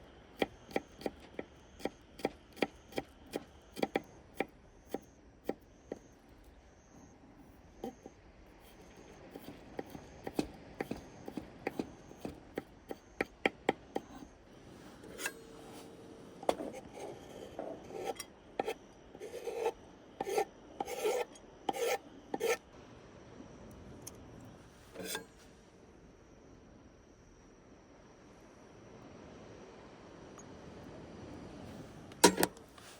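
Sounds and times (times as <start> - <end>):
rasping scrapes: 14.0 - 22.6, 25.0 - 25.4.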